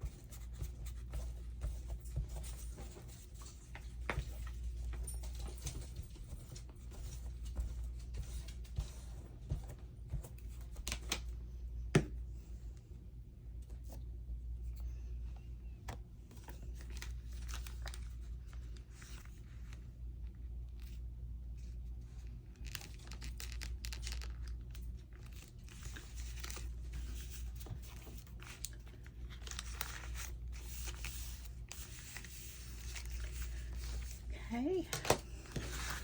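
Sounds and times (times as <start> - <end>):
paper rustling: 16.4 - 19.8, 22.2 - 34.3, 34.9 - 36.0.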